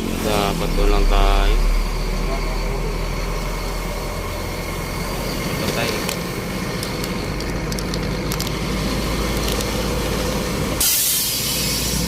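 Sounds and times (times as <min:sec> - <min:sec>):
truck diesel engine idling: 0:00.0 - 0:12.0
air brake hiss: 0:10.8 - 0:12.0.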